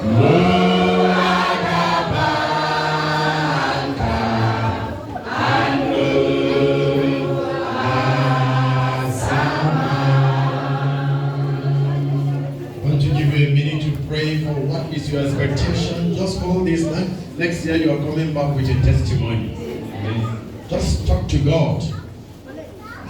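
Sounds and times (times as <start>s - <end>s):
congregation singing a hymn: 0.0s - 16.4s.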